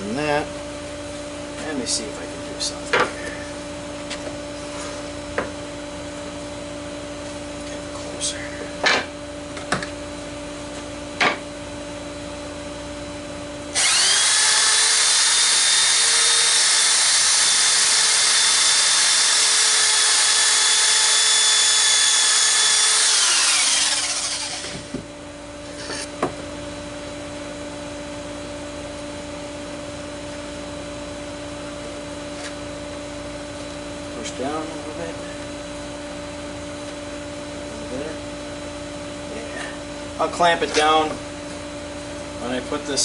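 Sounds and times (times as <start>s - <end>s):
electric drill boring wood: 13.7s - 25.0s.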